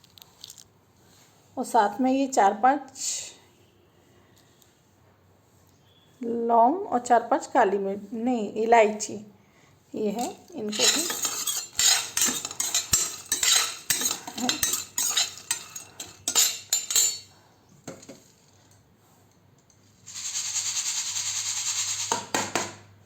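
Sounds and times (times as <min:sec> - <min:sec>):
metal spoon scraping a pan: 0:10.0 - 0:17.3.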